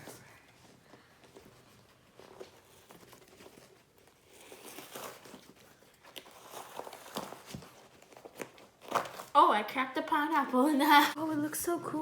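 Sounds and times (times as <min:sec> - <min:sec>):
foam crackling and tearing: 0:02.6 - 0:09.4.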